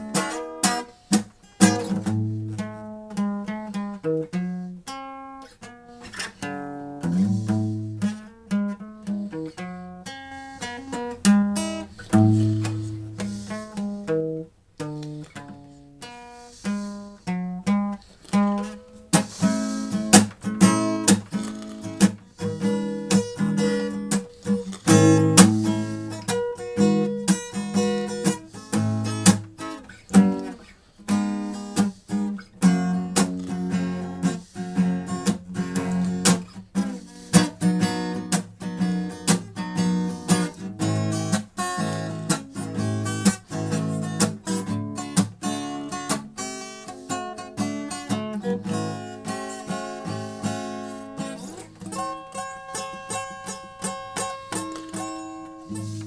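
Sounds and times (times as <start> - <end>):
acoustic guitar playing: 0.0 - 56.0.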